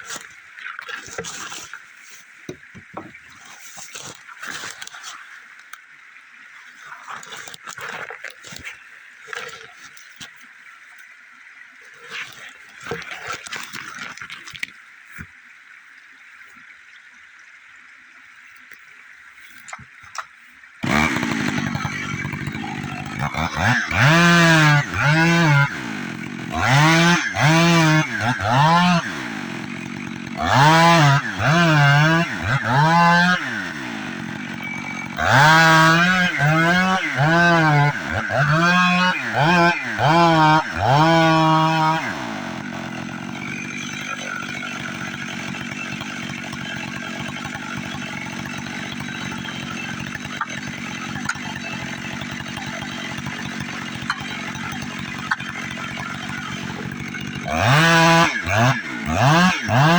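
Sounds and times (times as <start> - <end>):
chainsaw revving and idling: 20.8 - 59.9.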